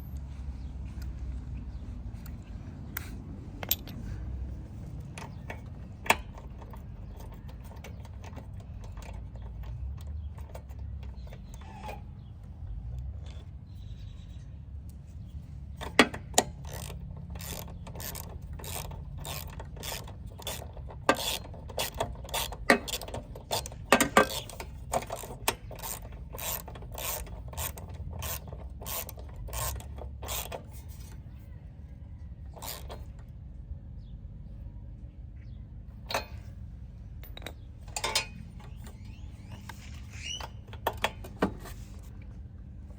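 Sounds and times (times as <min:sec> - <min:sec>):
socket ratchet clicking: 0:15.8 - 0:30.7.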